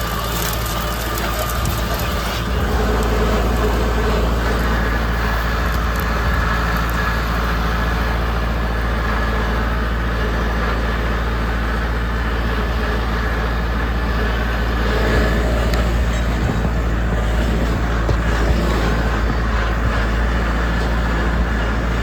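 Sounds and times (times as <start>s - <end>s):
tractor engine running under load: 0.0s - 22.0s.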